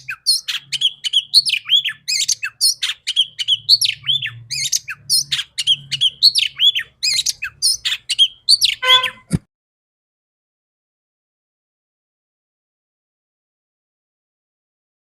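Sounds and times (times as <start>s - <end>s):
bird chirps and whistles: 0.0s - 9.3s.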